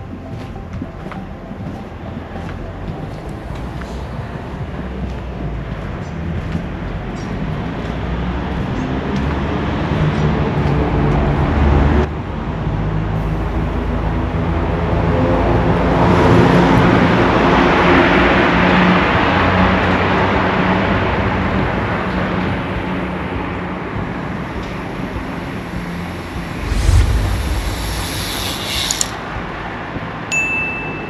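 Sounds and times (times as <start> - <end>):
vehicle engine running: 22.7 - 29.2
vehicle passing: 23.0 - 29.3.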